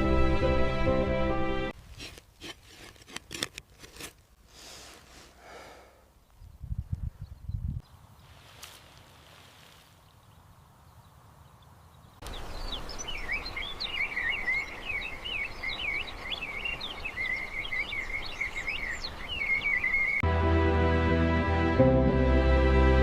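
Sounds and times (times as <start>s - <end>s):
bird-like high chirps: 12.2s - 20.2s.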